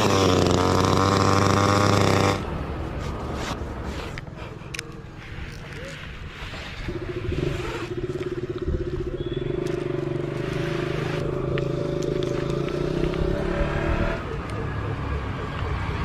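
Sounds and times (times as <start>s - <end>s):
chainsaw engine at high speed: 0.0s - 2.5s.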